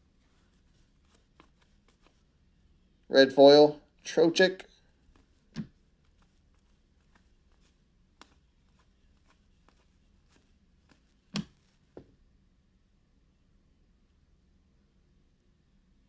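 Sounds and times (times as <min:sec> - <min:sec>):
cards clicking and rustling: 0:00.1 - 0:02.3, 0:04.8 - 0:12.1.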